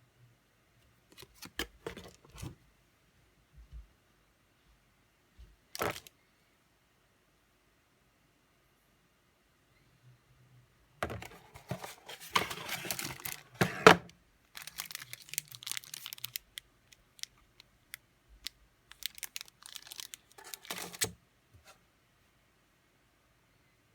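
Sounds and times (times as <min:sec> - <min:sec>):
packaging rustling and crinkling: 0:05.8 - 0:06.1, 0:11.2 - 0:17.4, 0:18.9 - 0:21.2.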